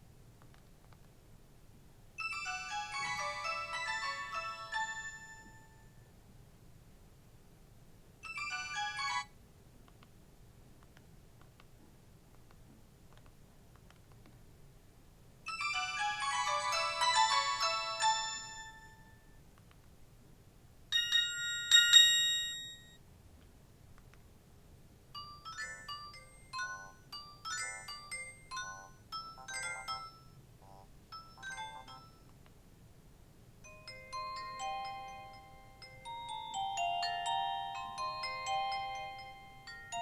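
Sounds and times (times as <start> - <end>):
phone ringtone melodies: 2.2 - 6.0, 8.2 - 9.3, 15.5 - 19.3, 20.9 - 23.0, 25.2 - 32.3, 33.6 - 40.0.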